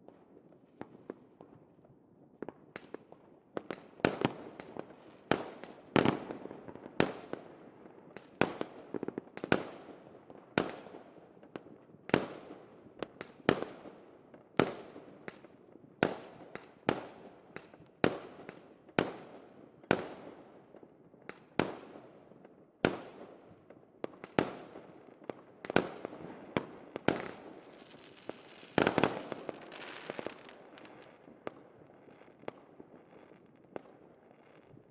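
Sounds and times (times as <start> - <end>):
fireworks bangs: 25.8 - 31.2
fireworks crackling: 25.9 - 31.3.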